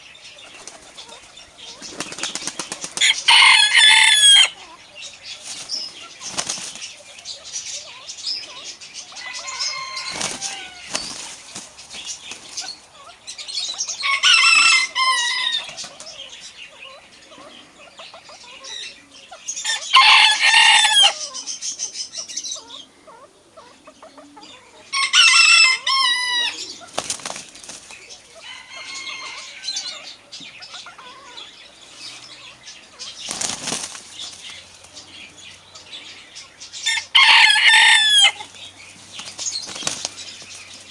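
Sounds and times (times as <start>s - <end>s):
wings flapping: 0.5s - 3.6s, 5.4s - 7.0s, 10.0s - 12.7s, 26.8s - 28.0s, 33.2s - 35.0s, 38.3s - 40.9s
rooster crowing: 3.0s - 4.6s, 9.2s - 10.9s, 14.0s - 15.7s, 19.7s - 21.3s, 24.9s - 26.6s, 28.4s - 30.1s, 36.8s - 38.5s.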